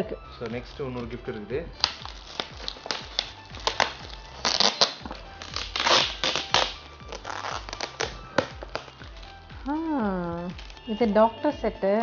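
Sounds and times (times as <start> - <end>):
wrapping paper crinkling and ripping: 1.8 - 11.0.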